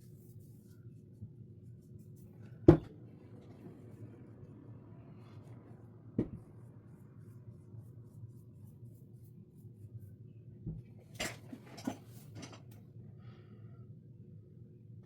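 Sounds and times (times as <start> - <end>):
faint steady hum: 0.0 - 15.0
paintbrush strokes on canvas: 6.4 - 10.2.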